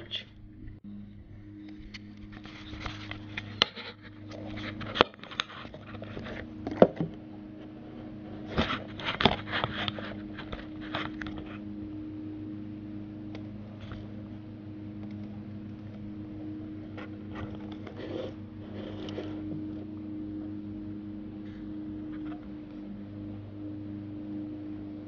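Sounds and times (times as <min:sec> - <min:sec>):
steady low hum: 0:00.0 - 0:25.0
rustling: 0:01.5 - 0:12.6, 0:13.4 - 0:20.0.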